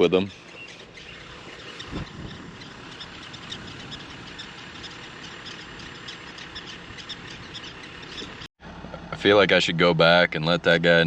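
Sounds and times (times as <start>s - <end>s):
prairie dogs calling: 0.0s - 9.1s
steady low rumble: 0.8s - 11.0s.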